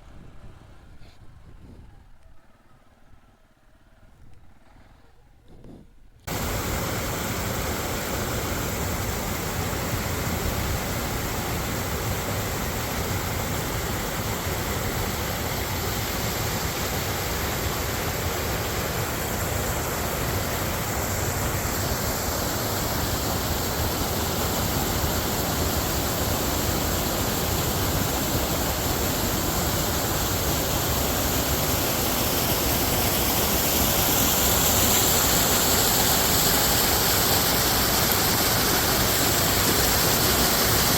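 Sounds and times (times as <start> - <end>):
wind and riding noise: 0.0 - 6.7.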